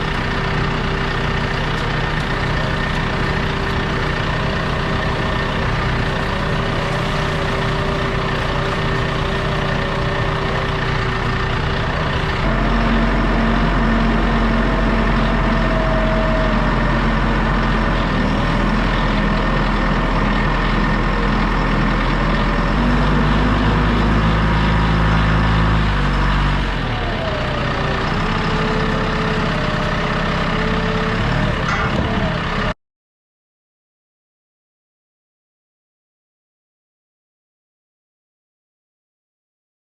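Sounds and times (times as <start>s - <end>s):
heavy engine running: 0.0s - 32.8s.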